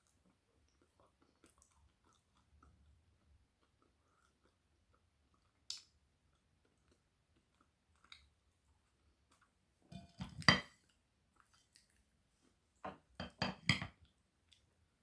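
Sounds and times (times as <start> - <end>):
crisp clicks and crunches of eating: 0.0 - 9.6.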